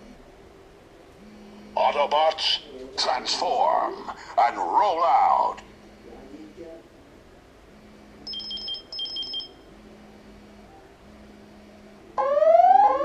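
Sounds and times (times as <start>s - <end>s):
rising siren tone: 12.2s - 13.0s.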